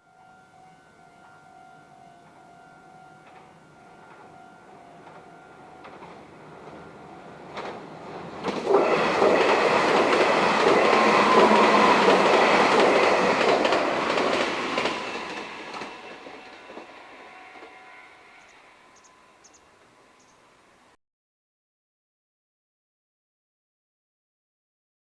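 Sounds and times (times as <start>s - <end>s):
electric train passing: 0.0s - 21.0s
wheels clattering on rails: 3.2s - 20.4s.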